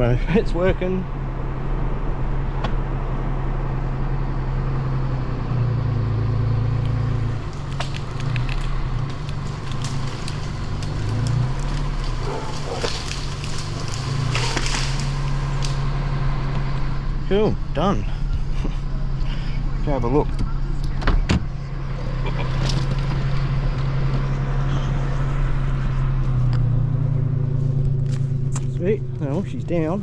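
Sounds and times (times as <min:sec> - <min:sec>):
vehicle engine under load: 0:00.0 - 0:30.0
wood and branches cracking: 0:06.8 - 0:16.9.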